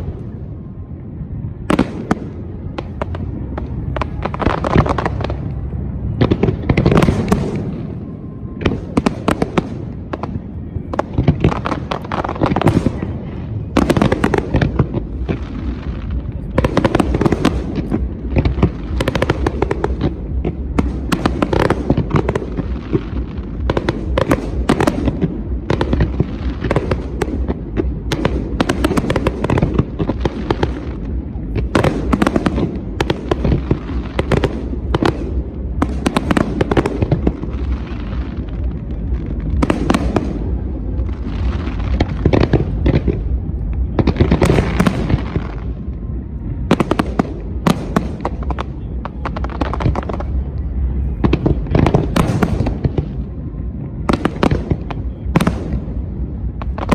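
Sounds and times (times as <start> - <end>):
firework bursts and crackling: 0.0 - 56.9
low rumble: 0.0 - 56.9.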